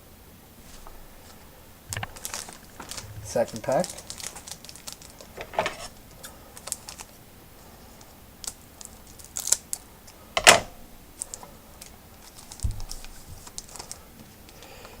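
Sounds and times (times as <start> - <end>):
card pack crinkling: 1.9 - 5.9.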